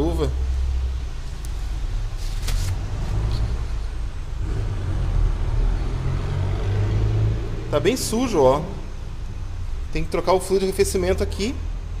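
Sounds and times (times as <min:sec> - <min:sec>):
brief rustles and clicks: 0:01.3 - 0:03.5.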